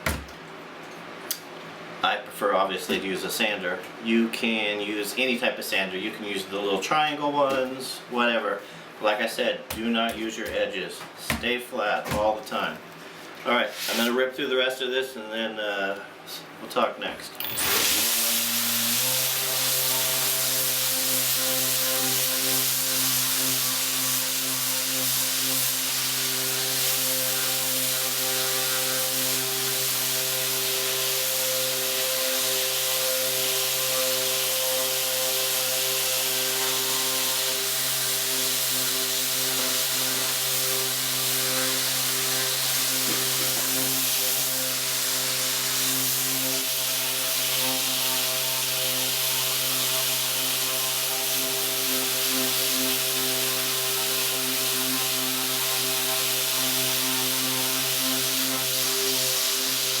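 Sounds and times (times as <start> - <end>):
power sander sanding wood: 17.4 - 60.0.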